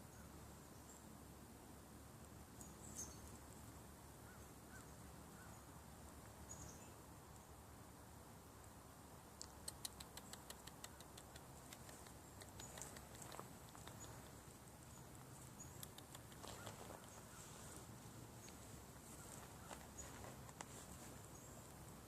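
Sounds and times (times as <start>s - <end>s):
sharp clicks: 9.4s - 14.4s, 15.6s - 17.2s.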